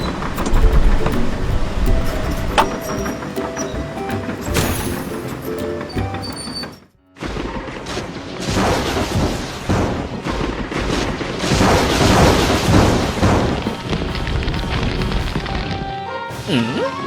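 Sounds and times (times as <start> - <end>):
background music: 0.0 - 17.0
rumbling boom with crackling impacts: 7.3 - 15.9.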